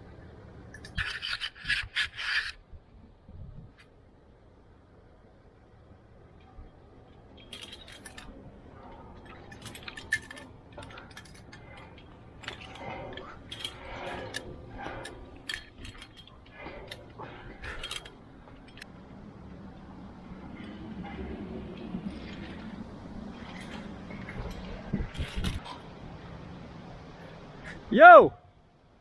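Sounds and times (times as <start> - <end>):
faint steady rumble: 2.6 - 29.0
metal climbing gear clinking: 6.3 - 18.9.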